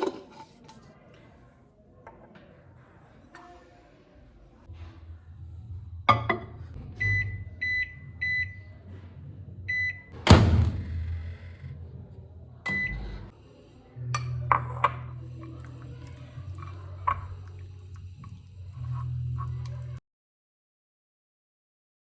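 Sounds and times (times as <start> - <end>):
microwave keypad beeps: 7.0 - 8.6, 9.7 - 10.1, 12.7 - 13.3.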